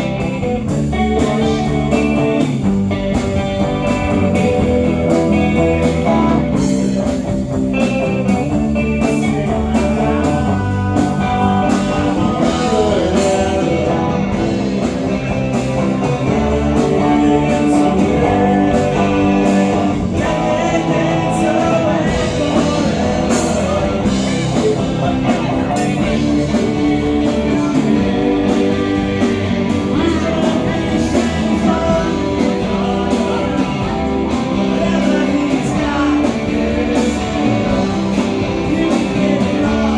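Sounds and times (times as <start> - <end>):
electric guitar: 0.0 - 39.9
rock band playing live: 0.0 - 39.9
person singing: 9.0 - 39.9.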